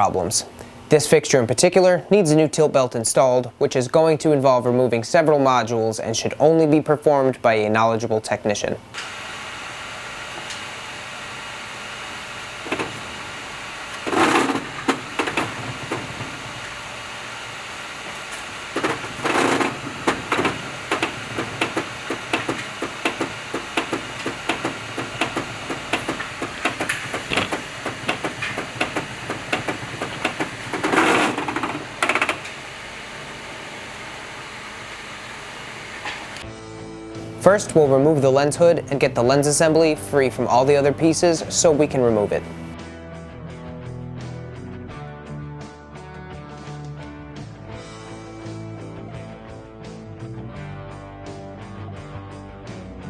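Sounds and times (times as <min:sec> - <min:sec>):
stage light fan hum: 0:00.0 - 0:36.4, 0:37.2 - 0:42.8
mechanical movement bursts: 0:08.9 - 0:36.4
rapid clicking: 0:12.2 - 0:32.8.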